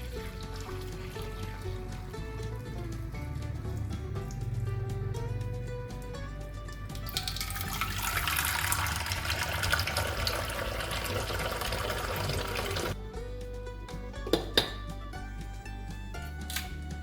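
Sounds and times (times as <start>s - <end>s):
water running from tap: 0.0s - 1.8s, 7.0s - 13.0s
quiet background music: 0.0s - 17.0s.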